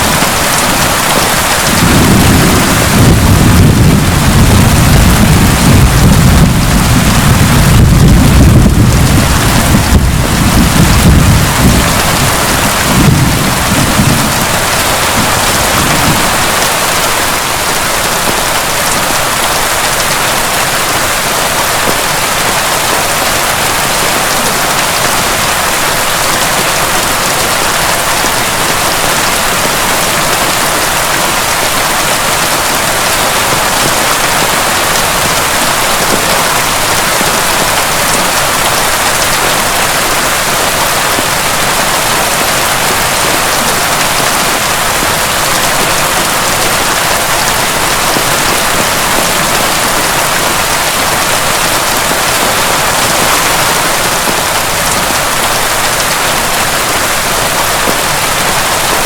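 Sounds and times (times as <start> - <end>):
heavy rain falling: 0.0 - 59.0
thunder rumble: 1.3 - 16.9.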